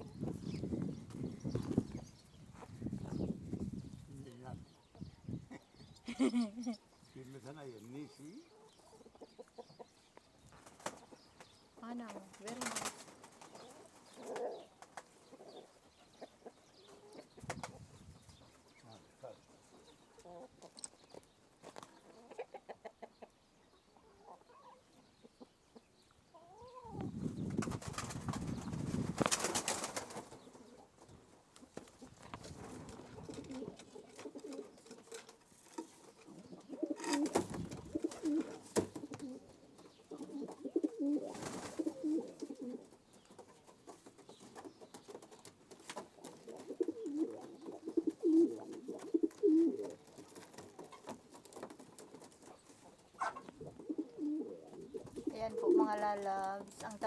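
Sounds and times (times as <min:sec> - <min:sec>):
pigeons cooing: 0:12.2 - 0:20.9, 0:23.9 - 0:57.0.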